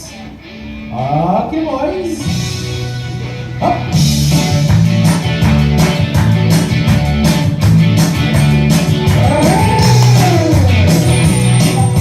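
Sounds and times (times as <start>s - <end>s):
rock music over loudspeakers: 0.0s - 12.0s
rising and falling tone: 8.7s - 12.0s.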